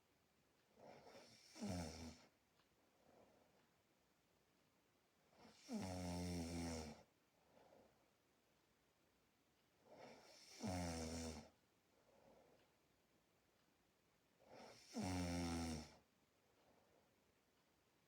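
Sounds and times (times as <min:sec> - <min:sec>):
soft breaths: 0:00.6 - 0:04.1, 0:06.8 - 0:08.5, 0:09.6 - 0:13.7, 0:14.3 - 0:17.7.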